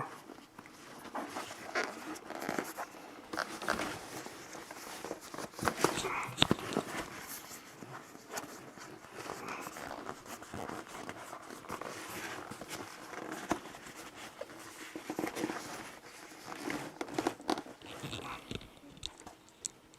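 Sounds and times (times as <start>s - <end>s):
zipper clicks and scrapes: 1.2s - 4.8s, 15.1s - 18.8s.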